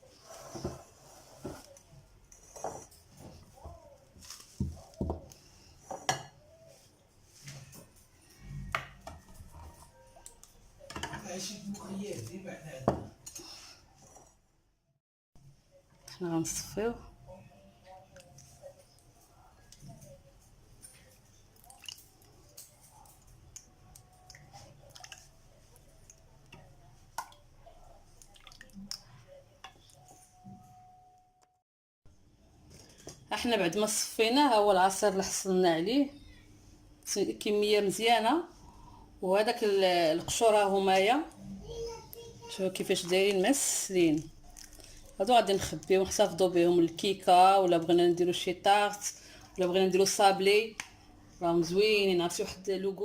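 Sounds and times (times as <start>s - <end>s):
faint drips: 20.8s - 30.2s
squishing of soaked peels: 21.5s - 26.2s, 28.1s - 29.2s, 44.4s - 45.2s.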